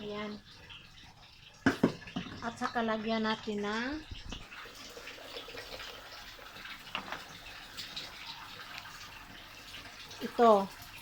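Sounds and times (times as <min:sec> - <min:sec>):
squid sizzling in a pan: 0:01.6 - 0:11.0.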